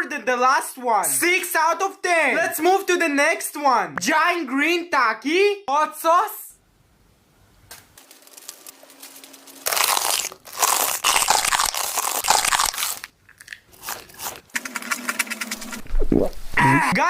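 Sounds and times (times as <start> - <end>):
tortilla chip crunching: 8.0 - 15.9.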